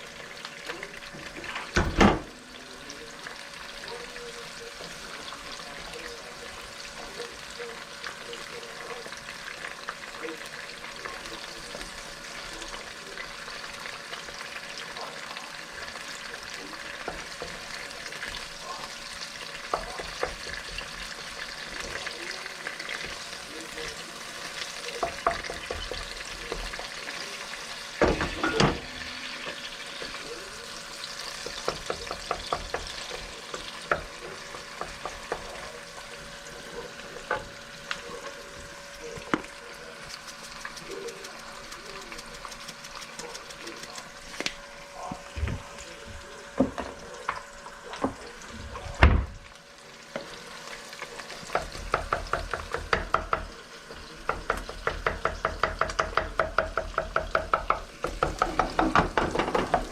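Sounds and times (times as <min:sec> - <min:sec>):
food sizzling in a frying pan: 0:00.0 - 0:59.9.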